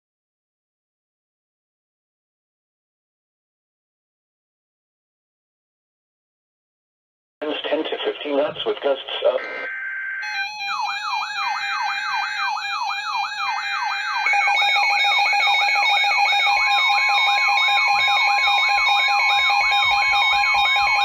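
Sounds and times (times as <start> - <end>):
steady alert tone: 9.3 - 15.8
digital data tone bursts: 9.4 - 21.0
steady electronic beeps: 9.4 - 21.0
siren-like tone sweeping down: 9.6 - 21.0.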